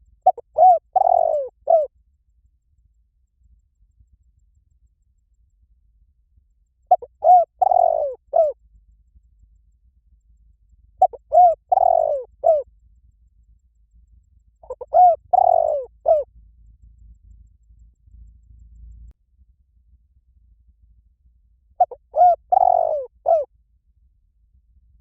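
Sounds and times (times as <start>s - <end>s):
dove cooing: 0.2s - 1.9s, 6.9s - 8.6s, 11.0s - 12.6s, 14.6s - 16.3s, 21.8s - 23.5s.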